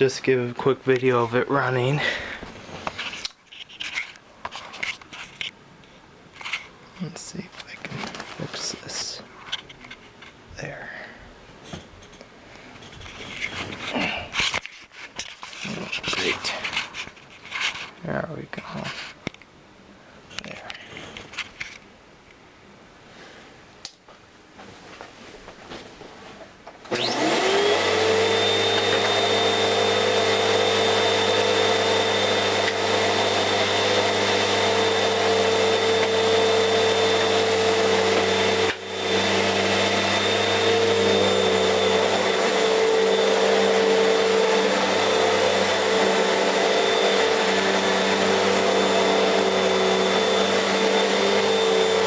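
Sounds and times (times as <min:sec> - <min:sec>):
vacuum cleaner motor whining: 0:26.9 - 0:52.0.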